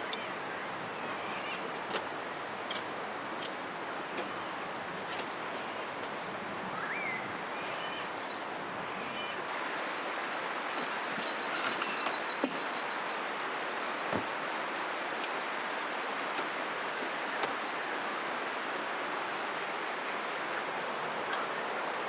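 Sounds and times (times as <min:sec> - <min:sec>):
river water rushing: 0:00.0 - 0:22.0
faint high whistles: 0:06.8 - 0:07.2.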